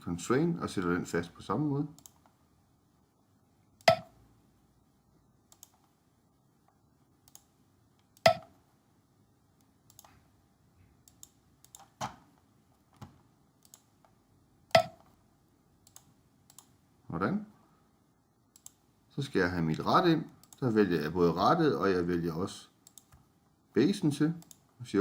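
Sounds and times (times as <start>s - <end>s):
computer mouse clicking: 2.0s - 2.4s, 5.5s - 5.9s, 7.2s - 8.5s, 9.6s - 10.2s, 11.0s - 12.2s, 12.9s - 15.1s, 15.8s - 16.8s, 18.5s - 18.8s, 20.3s - 20.6s, 22.8s - 23.3s, 24.4s - 24.7s.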